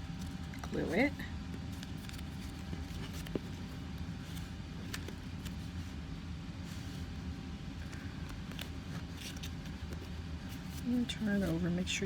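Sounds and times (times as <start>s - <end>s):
paper taps and rustles: 1.7s - 3.6s.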